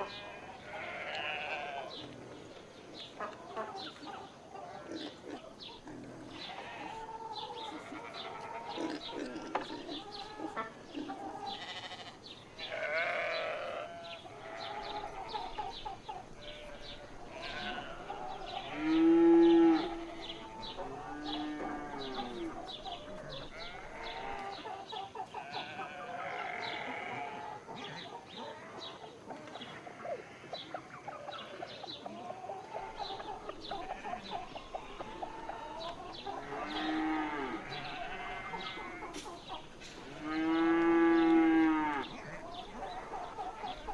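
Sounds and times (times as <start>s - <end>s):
sheep bleating: 0.0s - 2.0s, 5.9s - 24.5s, 25.4s - 27.5s, 32.7s - 43.9s.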